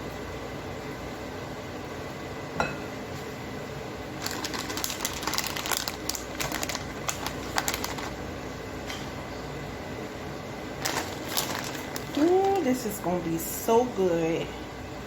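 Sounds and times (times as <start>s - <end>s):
background hum: 0.0s - 15.0s
rapid clicking and crinkling: 4.2s - 8.2s, 10.8s - 12.9s.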